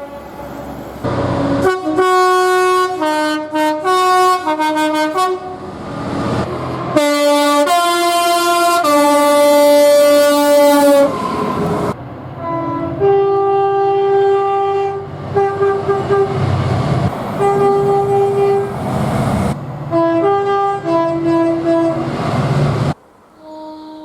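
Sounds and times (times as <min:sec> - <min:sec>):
two-tone train horns: 0:00.0 - 0:05.7, 0:06.9 - 0:18.8, 0:19.9 - 0:22.2, 0:23.3 - 0:24.0
passing train rumble: 0:00.0 - 0:24.0.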